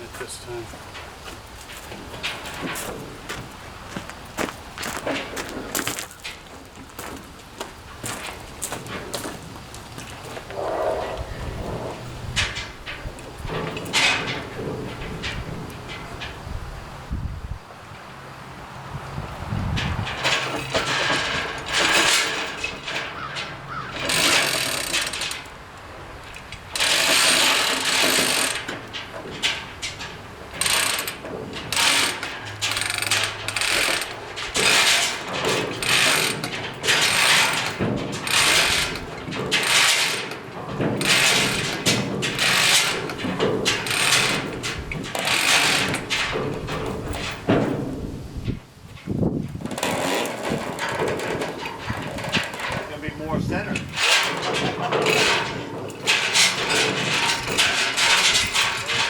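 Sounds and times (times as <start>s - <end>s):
ratchet strap clicking: 23.9s - 25.5s, 26.7s - 28.8s, 30.6s - 40.4s, 41.0s - 46.4s.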